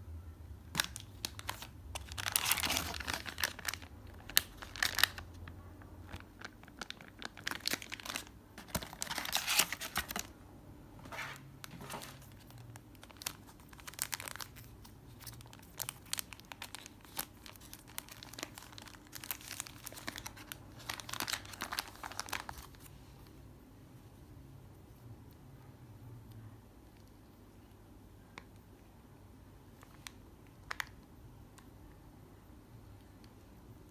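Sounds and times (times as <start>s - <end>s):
packaging rustling and clicking: 0.8s - 5.3s, 6.0s - 10.3s, 11.0s - 22.9s.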